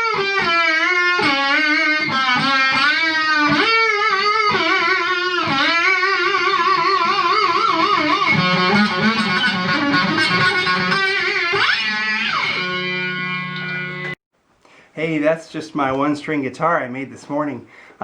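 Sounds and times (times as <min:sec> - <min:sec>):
one-string electric guitar sliding notes: 0:00.0 - 0:14.2.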